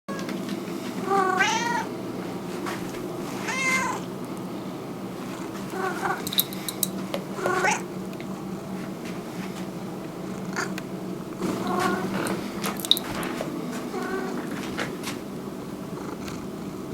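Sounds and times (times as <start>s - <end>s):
low background hum: 0.1s - 16.9s
cat meowing: 1.1s - 1.9s, 3.4s - 4.1s.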